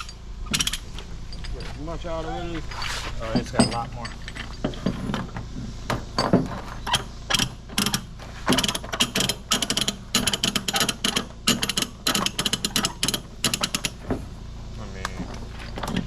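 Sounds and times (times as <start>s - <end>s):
ratchet tightener clicking: 0.0s - 0.9s, 6.9s - 14.0s.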